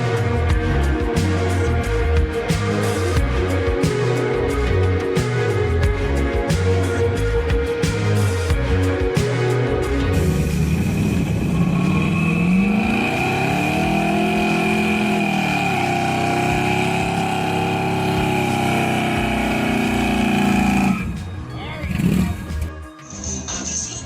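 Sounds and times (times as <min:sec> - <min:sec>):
car engine revving: 0:09.8 - 0:21.2.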